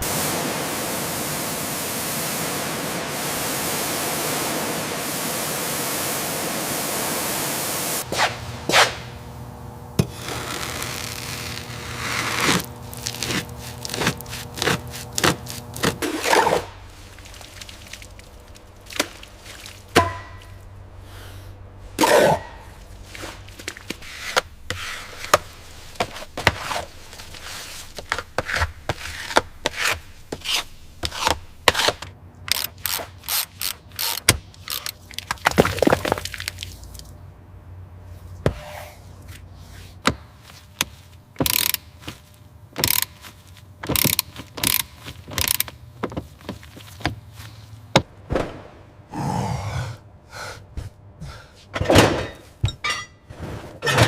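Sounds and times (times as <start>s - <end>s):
hand tool clicks and knocks: 43.8s - 46.2s.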